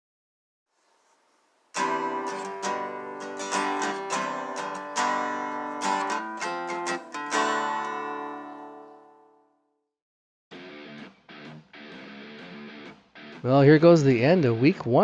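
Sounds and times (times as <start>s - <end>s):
strummed acoustic guitar: 1.8s - 9.4s.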